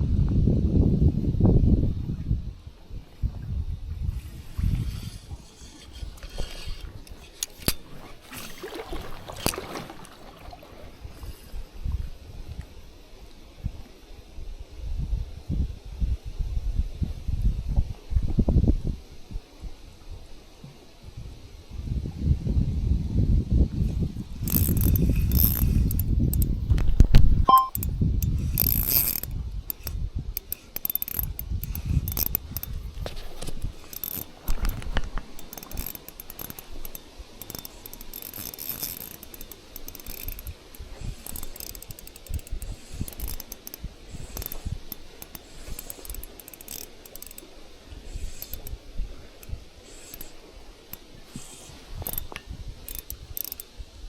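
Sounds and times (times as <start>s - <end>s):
wind rumbling on microphone: 0.0s - 54.0s
fishing reel gears clicking: 4.6s - 10.2s, 24.2s - 53.9s.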